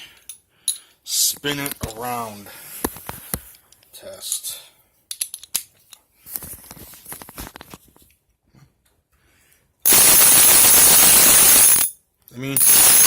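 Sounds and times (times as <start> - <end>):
ratchet spinning buzzing rattle: 9.9 - 11.9, 12.6 - 13.0.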